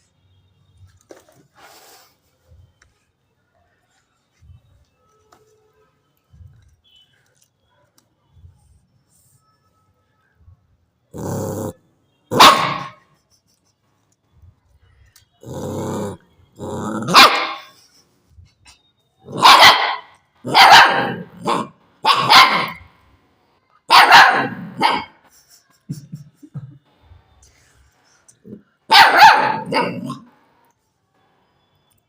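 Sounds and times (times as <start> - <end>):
puppy growling: 11.1 - 11.8, 15.4 - 17.3
puppy barking: 12.3 - 13.0, 16.8 - 17.8, 19.3 - 22.9, 23.9 - 25.2, 28.9 - 30.3.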